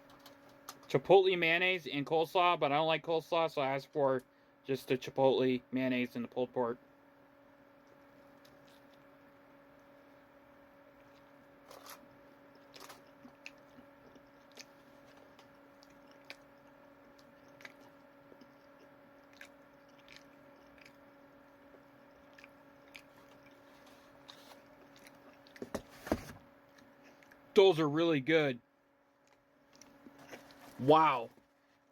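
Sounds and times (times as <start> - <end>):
person chewing food: 11.0 - 25.9, 26.6 - 27.5, 29.2 - 30.8.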